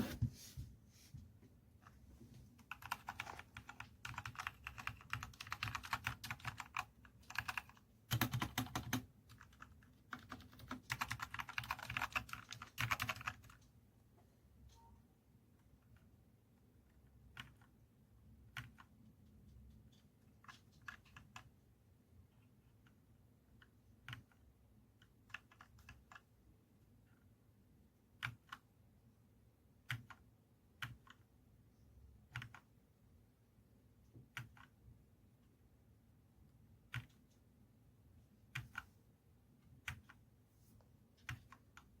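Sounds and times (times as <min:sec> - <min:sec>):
clicky mechanical keyboard keys: 0:02.6 - 0:13.6, 0:17.0 - 0:17.7, 0:18.5 - 0:18.9, 0:25.0 - 0:26.3, 0:28.2 - 0:28.6, 0:29.9 - 0:30.2, 0:32.3 - 0:32.7, 0:34.3 - 0:34.8.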